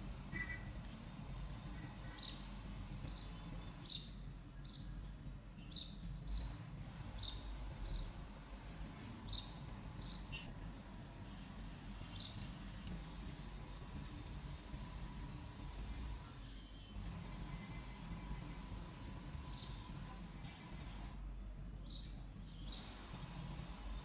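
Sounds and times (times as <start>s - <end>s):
small bird chirping: 1.8s - 8.2s, 9.2s - 10.5s, 21.8s - 22.8s.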